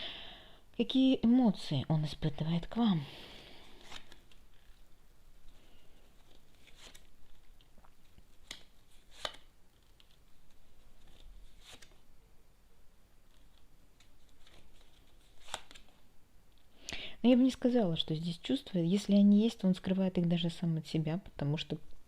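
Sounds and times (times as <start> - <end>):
soft rustling of cards: 2.0 - 12.3, 13.0 - 16.8
cards snapping: 3.8 - 4.7, 8.3 - 10.2, 13.3 - 15.9.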